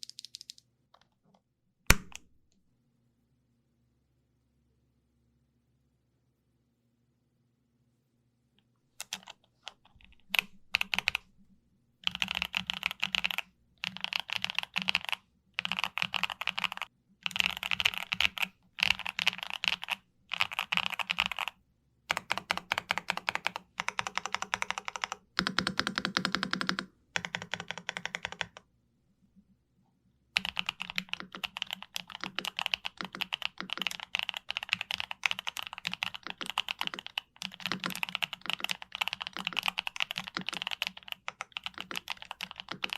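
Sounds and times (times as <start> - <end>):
mechanical keyboard typing: 0.0 - 0.6, 9.0 - 11.2, 12.0 - 28.6, 30.4 - 42.9.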